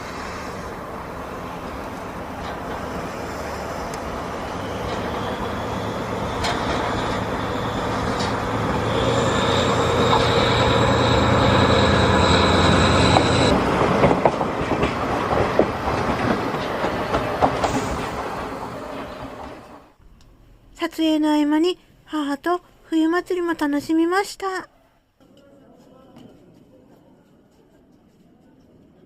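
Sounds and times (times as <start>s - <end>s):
train wheels clacking over rail joints: 0.0s - 19.9s
diesel locomotive engine drone: 0.0s - 20.0s
high steady tone: 4.2s - 13.6s.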